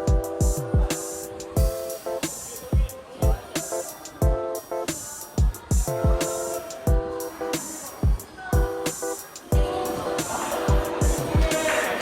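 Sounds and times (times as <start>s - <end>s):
deep kick drum beat: 0.0s - 1.9s, 2.8s - 3.4s, 4.2s - 4.5s, 5.4s - 6.2s, 6.8s - 7.2s, 8.0s - 8.9s, 10.7s - 11.5s
repeated music chords: 0.0s - 12.0s.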